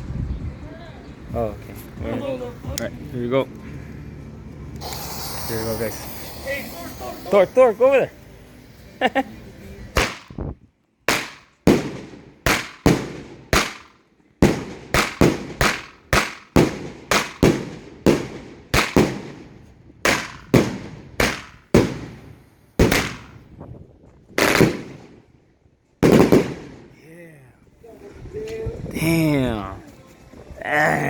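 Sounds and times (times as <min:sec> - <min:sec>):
firework launch thumps and bangs: 0:10.0 - 0:10.5, 0:11.1 - 0:23.4, 0:24.4 - 0:25.2, 0:26.0 - 0:27.0.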